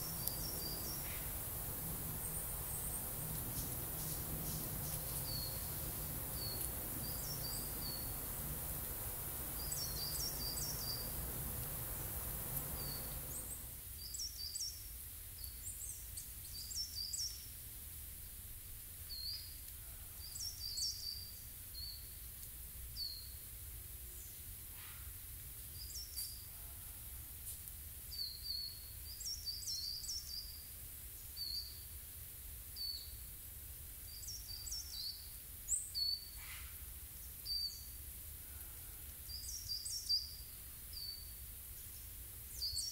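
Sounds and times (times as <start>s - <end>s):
songbirds chirping: 0.0s - 14.8s, 19.0s - 22.2s, 28.0s - 32.0s, 34.0s - 42.9s
low rumble and hiss: 0.0s - 16.5s.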